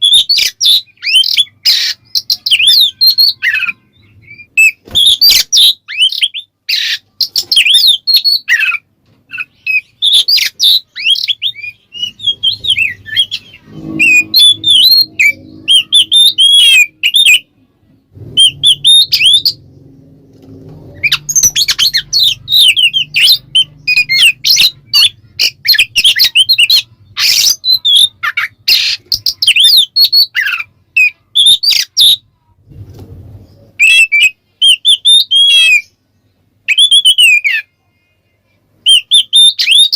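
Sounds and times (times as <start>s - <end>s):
bird singing whistled phrases: 9.4s - 17.4s, 33.8s - 36.0s, 36.7s - 37.7s, 38.9s - 39.9s.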